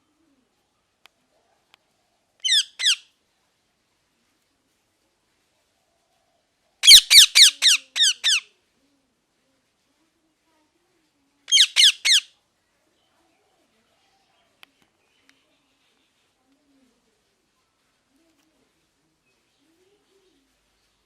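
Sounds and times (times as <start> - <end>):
parrot squawking: 2.4 - 3.0, 6.8 - 8.5, 11.5 - 12.3.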